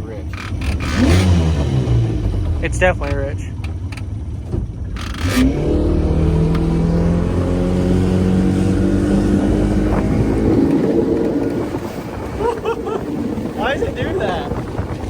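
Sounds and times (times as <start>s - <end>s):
outboard motor accelerating: 0.0s - 15.0s
wind and water rushing: 5.2s - 15.0s.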